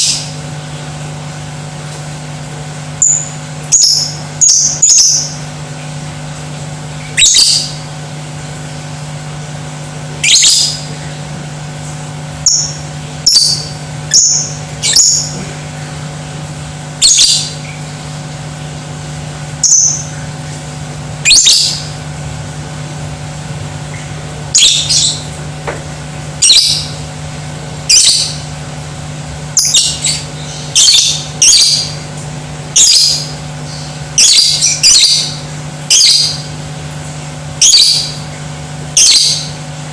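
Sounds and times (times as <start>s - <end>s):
steady low hum: 0.0s - 39.9s
bird shrill calls: 7.2s - 7.8s, 10.2s - 10.9s, 12.5s - 15.4s, 17.0s - 17.6s, 21.3s - 21.9s, 24.5s - 25.3s, 26.4s - 27.0s, 27.9s - 28.4s, 29.6s - 32.0s, 32.8s - 36.4s, 37.6s - 38.2s, 39.0s - 39.5s.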